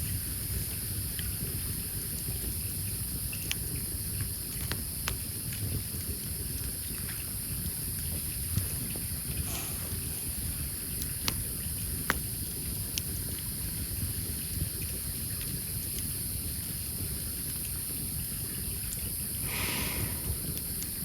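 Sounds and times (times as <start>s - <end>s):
campfire crackling and popping: 0.4s - 14.4s.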